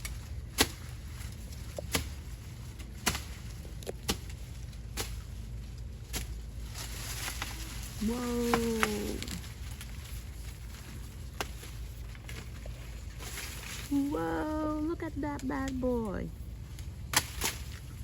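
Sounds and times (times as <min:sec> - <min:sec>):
tool chopping sugarcane: 0:00.0 - 0:01.0, 0:01.7 - 0:02.3, 0:02.9 - 0:05.2
steady low rumble: 0:00.0 - 0:18.0.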